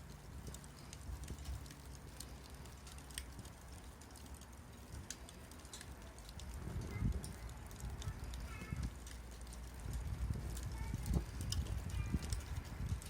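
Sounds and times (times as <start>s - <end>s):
low steady rumble: 0.0s - 13.0s
wood fire crackling: 0.0s - 13.0s.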